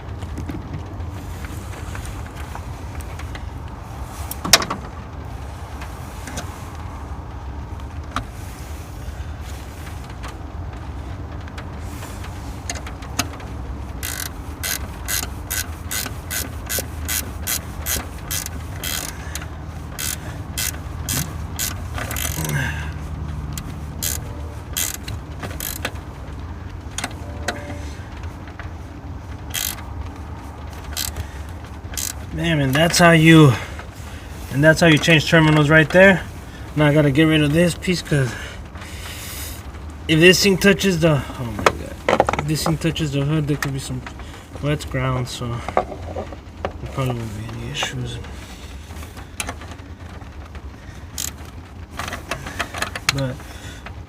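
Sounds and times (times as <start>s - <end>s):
ratchet wrench clicking: 14.0s - 22.7s, 23.6s - 25.9s, 29.5s - 29.8s, 30.9s - 31.2s, 31.9s - 32.2s, 51.2s - 51.4s.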